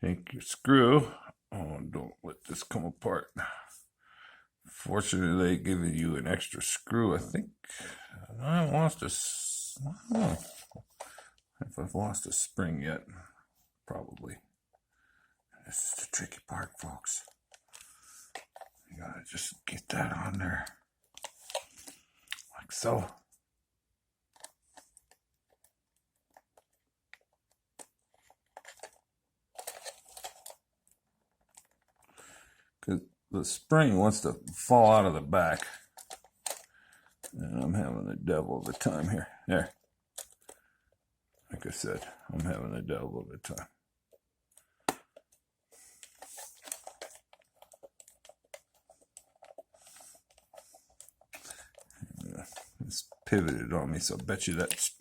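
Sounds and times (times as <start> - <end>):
small clicks and scratching: 15.8 - 18.9, 19.8 - 22.9, 24.3 - 32.2, 35.4 - 37.7, 38.6 - 42.6, 43.5 - 55.0.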